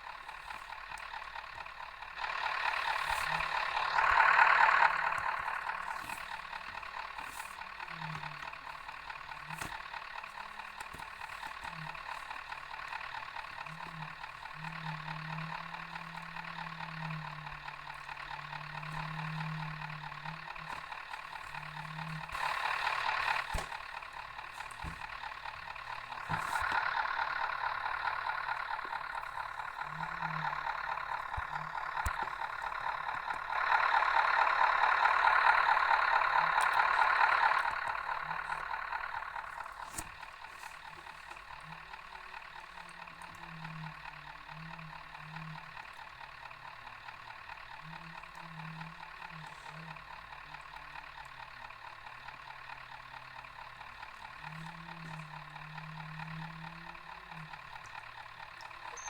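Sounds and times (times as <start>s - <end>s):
bus engine and road hum: 0.0s - 59.0s.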